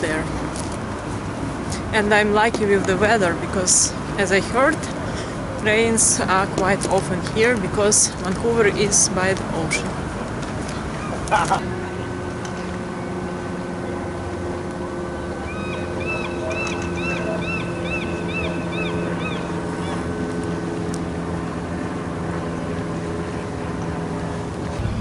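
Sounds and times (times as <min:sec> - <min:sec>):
steady motor hum: 0:11.6 - 0:25.0.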